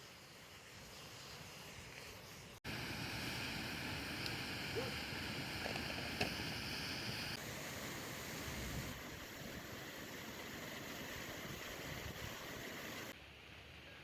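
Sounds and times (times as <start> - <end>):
flowing water rushing: 2.7 - 13.2.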